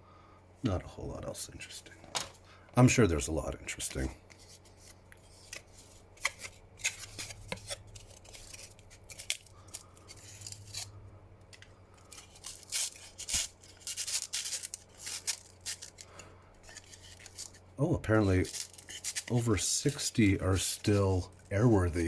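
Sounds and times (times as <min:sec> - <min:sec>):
packaging scraping and rustling: 0:03.9 - 0:11.0, 0:12.0 - 0:22.0.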